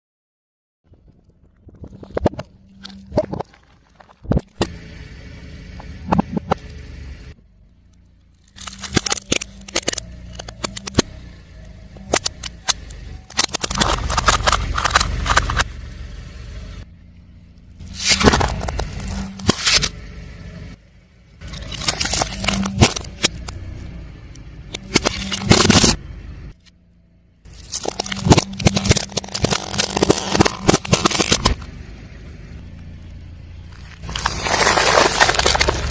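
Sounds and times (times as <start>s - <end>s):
objects cracking under car tyre: 0.9s - 4.8s, 7.7s - 15.7s, 17.8s - 20.0s, 21.4s - 26.8s, 27.4s - 31.7s, 32.7s - 35.9s
car engine hum: 0.9s - 35.9s.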